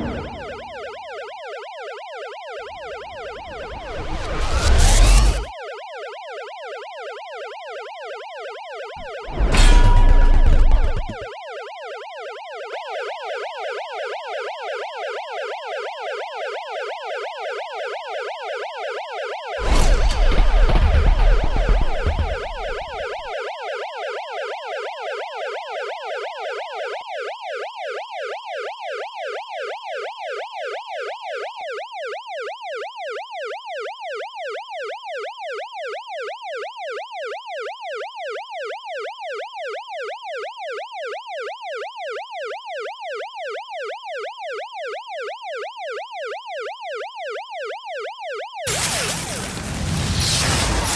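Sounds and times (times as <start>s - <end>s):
police siren yelping: 0.0s - 50.9s
loud noisy burst: 19.6s - 23.3s, 48.7s - 50.9s.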